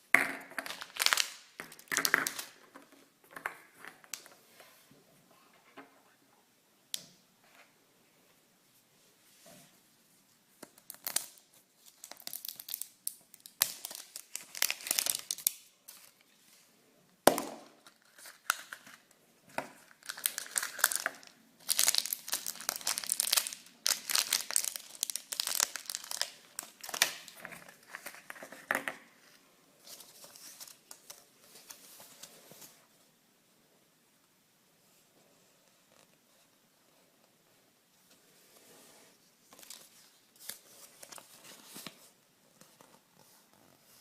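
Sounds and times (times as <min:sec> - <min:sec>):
wrappers crinkling and tearing: 0:10.9 - 0:16.1, 0:20.0 - 0:28.2.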